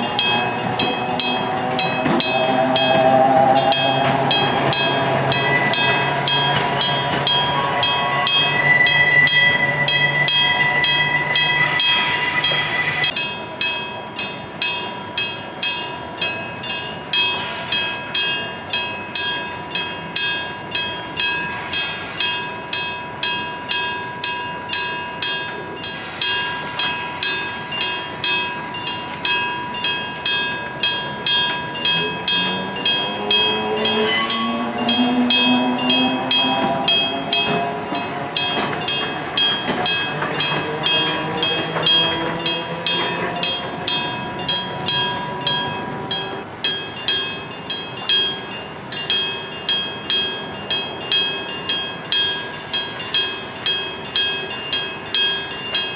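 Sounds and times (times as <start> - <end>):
train running past: 0.0 - 55.9
level crossing bell ringing: 13.0 - 55.9
train horn blast: 33.2 - 37.2.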